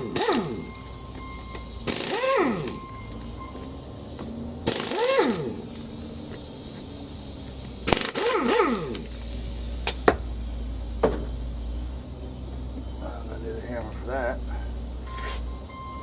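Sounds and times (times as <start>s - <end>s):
pneumatic impact wrench whining: 0.0s - 12.9s
sharp clicks: 7.6s - 9.2s.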